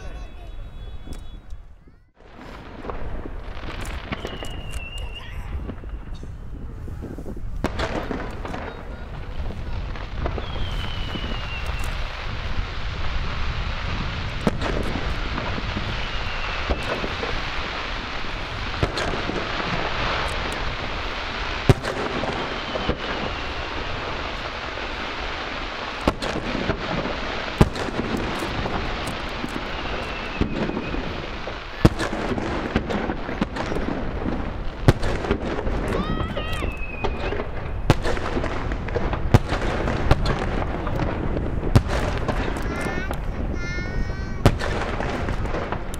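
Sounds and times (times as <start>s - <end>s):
falling whistles: 0.1s - 1.7s, 4.0s - 6.2s, 10.4s - 12.1s, 15.9s - 17.1s, 22.4s - 23.9s, 29.6s - 31.2s, 36.4s - 37.8s
firework shells bursting: 2.3s - 6.5s, 7.6s - 43.6s, 44.3s - 45.9s.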